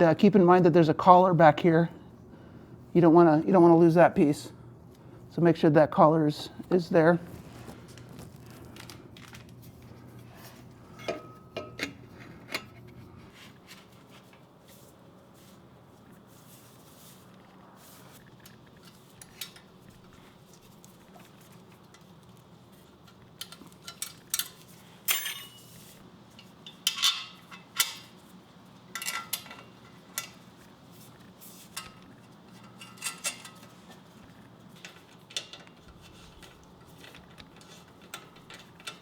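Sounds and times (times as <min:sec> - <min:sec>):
metallic clinks of tools: 0:23.8 - 0:25.8.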